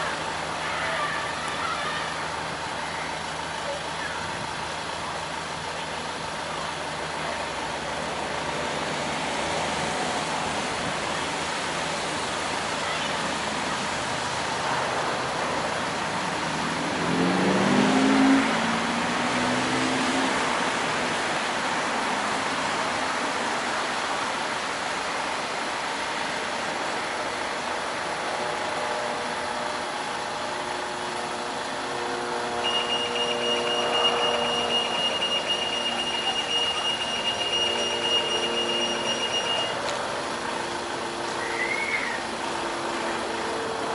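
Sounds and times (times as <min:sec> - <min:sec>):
road traffic passing: 0:00.0 - 0:43.9
vehicle accelerating: 0:04.3 - 0:43.9
pedestrian signal beeping: 0:32.2 - 0:42.3.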